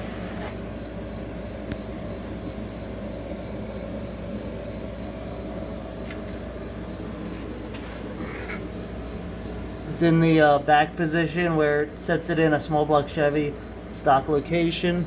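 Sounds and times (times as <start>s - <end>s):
cricket chirping: 0.0s - 15.0s.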